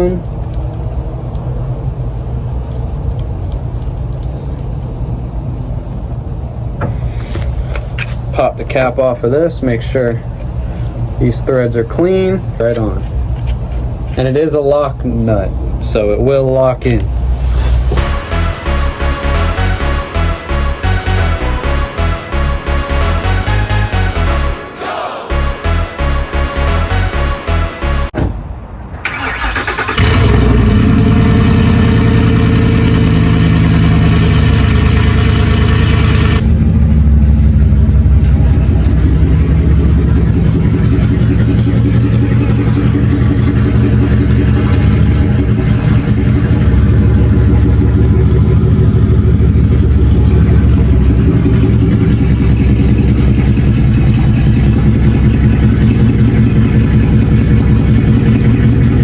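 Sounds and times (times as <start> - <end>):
pickup truck engine running: 29.0 - 59.0.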